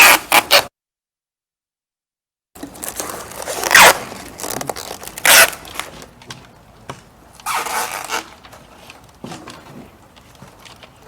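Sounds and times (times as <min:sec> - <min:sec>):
packing tape pulled off roll: 0:00.0 - 0:00.7, 0:02.6 - 0:06.6, 0:07.4 - 0:11.0.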